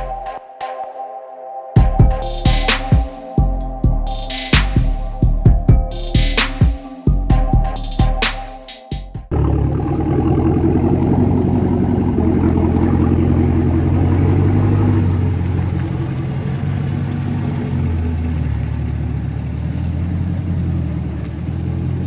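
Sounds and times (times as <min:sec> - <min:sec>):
car engine running at low revs: 0:09.2 - 0:22.0.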